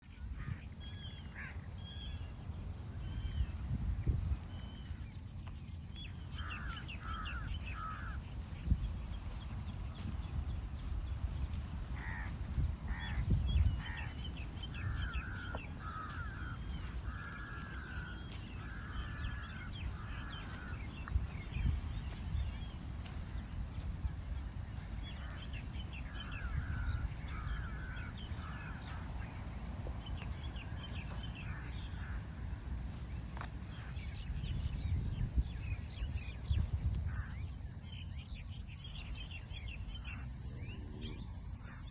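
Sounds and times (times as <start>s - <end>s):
small birds chirping: 0.0s - 41.9s
crows cawing: 0.4s - 1.7s, 6.2s - 8.6s, 11.3s - 34.6s, 35.9s - 37.6s
high-pitched insect drone: 0.4s - 38.2s.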